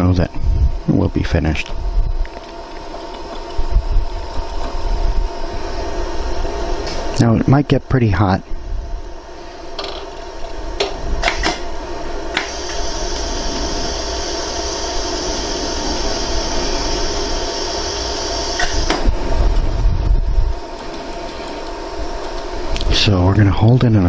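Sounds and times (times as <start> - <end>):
welding machine fan hum: 0.0 - 24.0
low rumble: 19.0 - 20.7.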